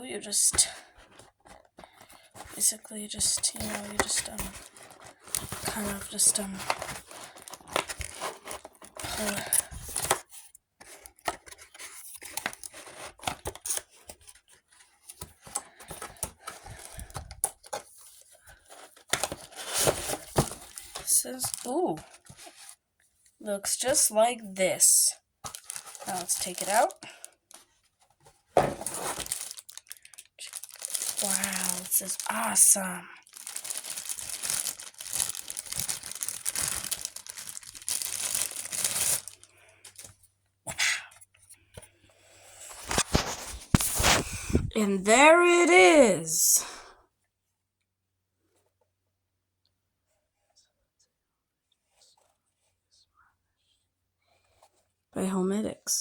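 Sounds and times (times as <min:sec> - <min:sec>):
cardboard packaging rustling: 0:00.8 - 0:22.8, 0:25.4 - 0:40.2, 0:42.6 - 0:44.8.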